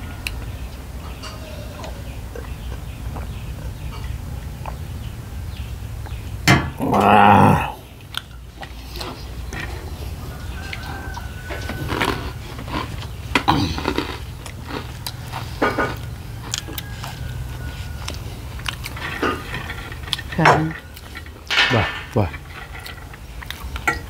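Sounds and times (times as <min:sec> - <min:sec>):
chewing and mouth noises: 0:00.2 - 0:05.1, 0:07.8 - 0:21.5, 0:22.2 - 0:24.0
dishes clicking: 0:18.6 - 0:24.0.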